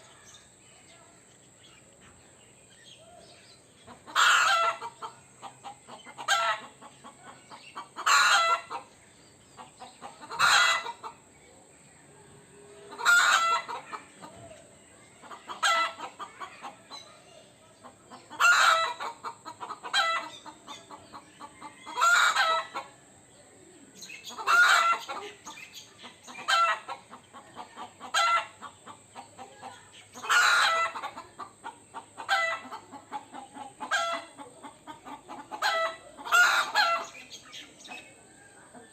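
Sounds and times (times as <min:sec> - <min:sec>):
soft rapid clucks: 0:03.8 - 0:08.9, 0:17.8 - 0:22.0, 0:24.2 - 0:38.0.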